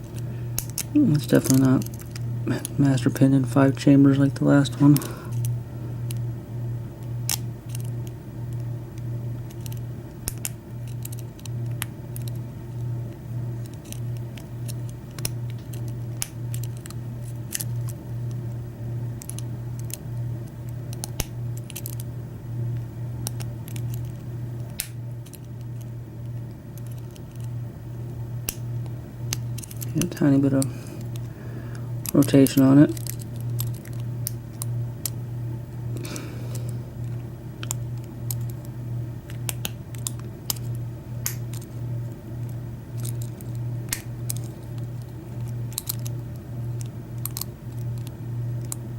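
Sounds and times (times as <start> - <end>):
low hum: 0.0 - 48.9.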